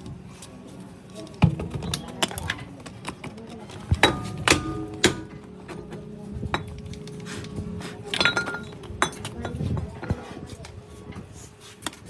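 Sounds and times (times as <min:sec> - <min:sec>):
hammer clanking on metal: 0:03.9 - 0:06.8.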